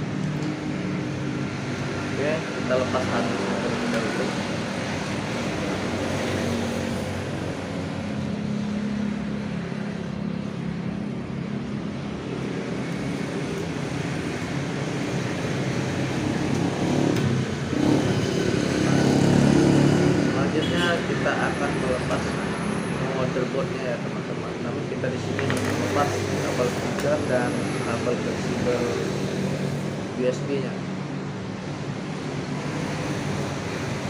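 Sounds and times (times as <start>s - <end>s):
vehicle engines humming: 0.0s - 34.0s.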